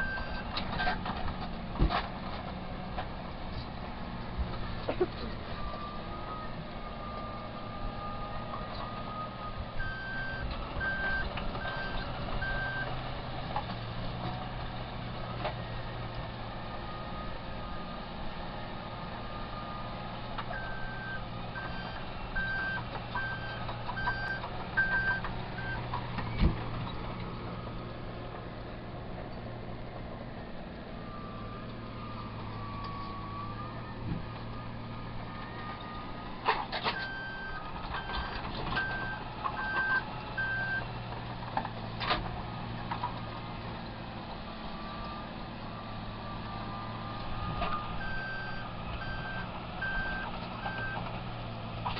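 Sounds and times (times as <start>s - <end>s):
reversing alarm beeping: 0.0s - 0.4s, 9.1s - 12.9s, 20.6s - 25.8s, 36.9s - 40.8s, 46.4s - 51.0s.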